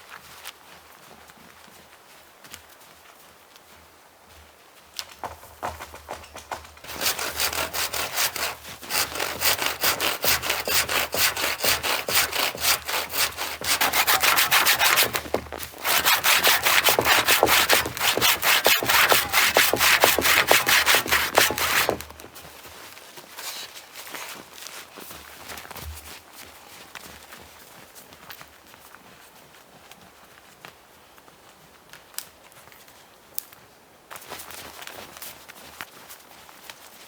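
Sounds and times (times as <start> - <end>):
hand saw cutting through log: 6.8 - 22.3.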